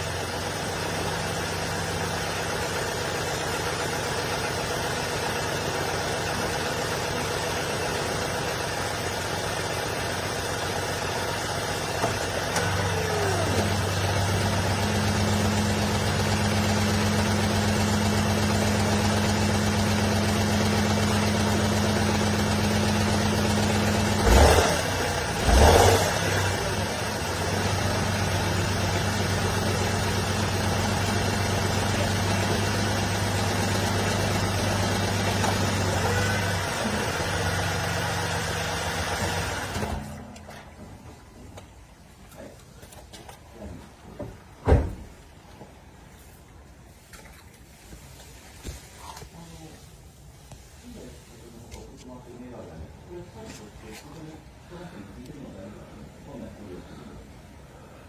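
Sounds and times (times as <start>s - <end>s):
car engine idling: 0.0s - 42.7s.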